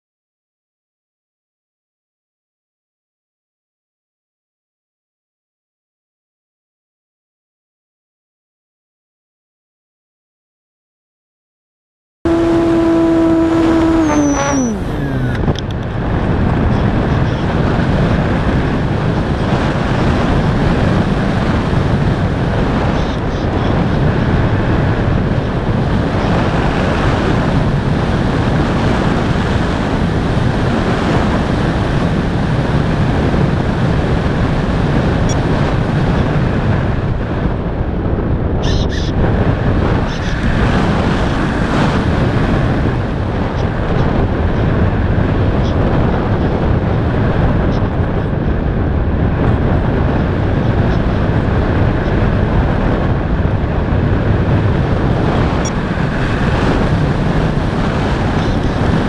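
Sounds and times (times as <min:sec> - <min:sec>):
pitched hum: 0:12.3 - 0:15.8
wind rushing past microphone: 0:12.3 - 0:59.0.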